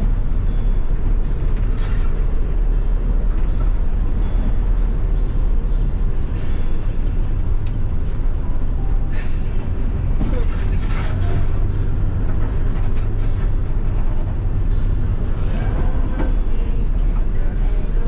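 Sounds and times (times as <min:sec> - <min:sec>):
bus engine and road noise: 0:00.0 - 0:18.0.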